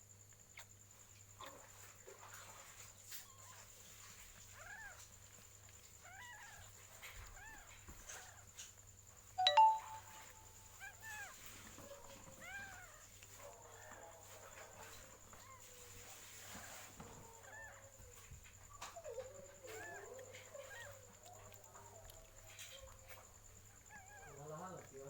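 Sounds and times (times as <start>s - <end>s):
brief steady-pitched sound: 9.4s - 10.4s.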